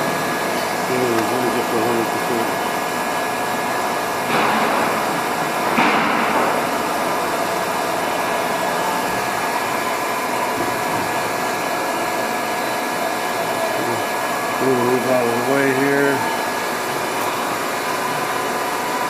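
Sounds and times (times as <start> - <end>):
machine whirring: 0.0 - 19.0.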